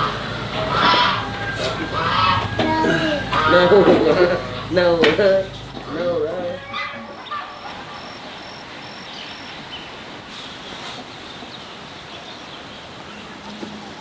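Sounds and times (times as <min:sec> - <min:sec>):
steady outdoor hiss: 0:00.0 - 0:14.0
insect chirping: 0:07.3 - 0:10.1.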